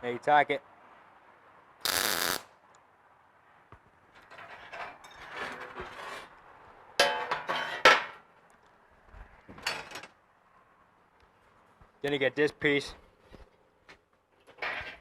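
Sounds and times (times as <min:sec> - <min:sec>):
welding arc crackling: 0:01.8 - 0:02.5.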